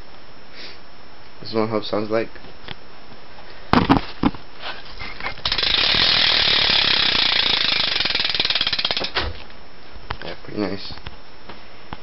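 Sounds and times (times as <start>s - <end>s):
bicycle hub ratcheting clicks: 5.4s - 9.2s.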